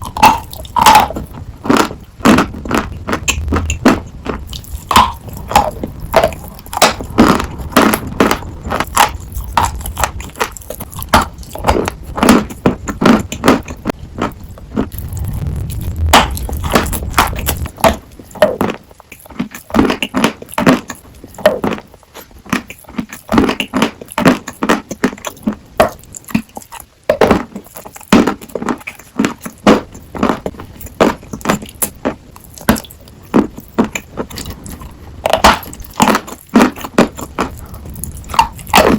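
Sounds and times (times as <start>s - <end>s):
chalk being chewed: 16.3s - 38.9s.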